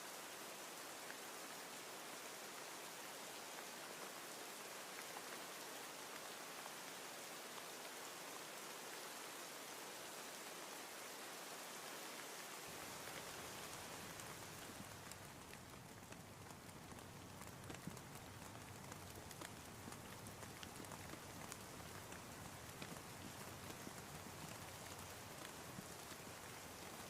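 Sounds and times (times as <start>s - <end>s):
steady rain falling: 0.0s - 27.0s.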